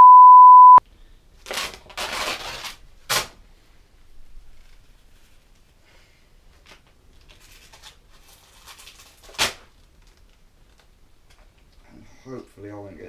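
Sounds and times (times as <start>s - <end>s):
grip tape rustling and crinkling: 1.4s - 3.4s, 4.2s - 11.8s.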